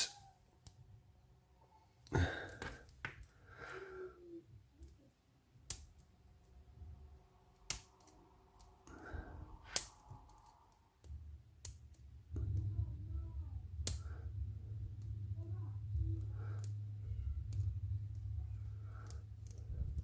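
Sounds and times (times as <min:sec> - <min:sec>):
low handling rumble: 0:12.1 - 0:20.0.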